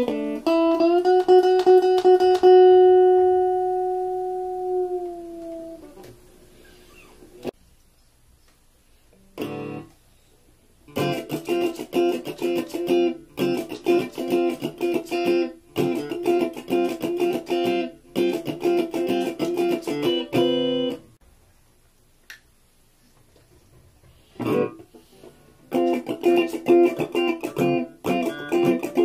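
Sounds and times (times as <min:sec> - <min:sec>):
electric guitar playing: 0:00.0 - 0:06.2, 0:09.4 - 0:09.9, 0:10.9 - 0:21.2, 0:24.4 - 0:24.8, 0:25.7 - 0:29.0.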